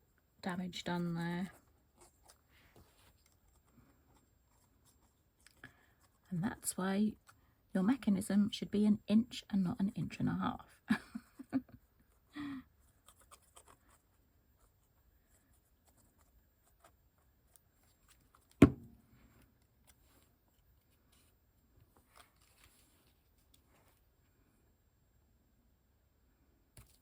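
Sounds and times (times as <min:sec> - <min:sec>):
paper and card handling: 0:12.8 - 0:24.0, 0:26.8 - 0:27.0
sharp knock: 0:18.6 - 0:19.0.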